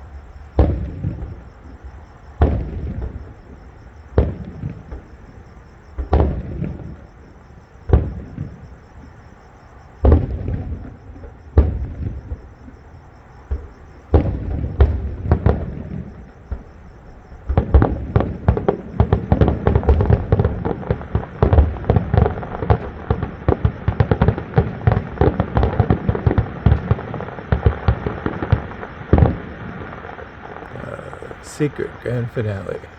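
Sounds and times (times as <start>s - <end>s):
fireworks booming: 30.7s - 32.9s.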